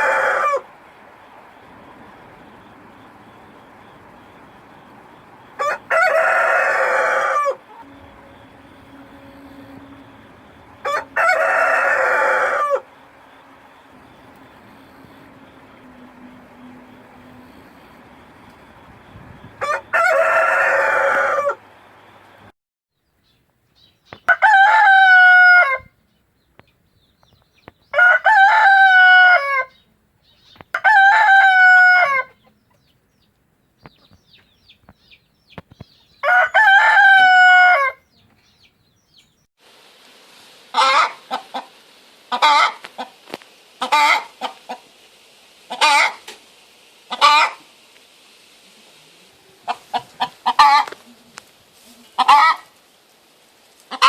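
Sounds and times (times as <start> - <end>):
rooster crowing: 0.0 - 0.8, 5.5 - 14.0, 19.5 - 21.9, 24.3 - 25.9, 27.9 - 29.8, 30.8 - 32.4, 36.2 - 38.1, 40.7 - 41.6, 42.3 - 42.8, 43.8 - 44.4, 45.7 - 46.2, 47.1 - 47.7, 52.2 - 52.7
chicken clucking: 5.6 - 8.0, 40.7 - 41.7, 42.3 - 43.2, 43.8 - 44.9, 45.7 - 46.4, 47.1 - 47.7, 49.4 - 52.8
steady hiss: 39.6 - 54.0.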